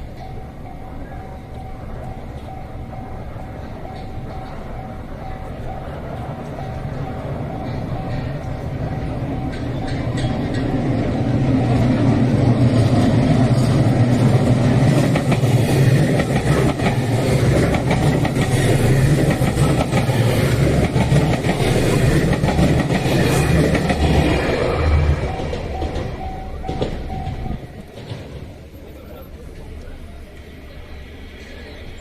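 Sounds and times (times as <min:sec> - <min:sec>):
train wheels on rails: 0:00.0 - 0:32.0.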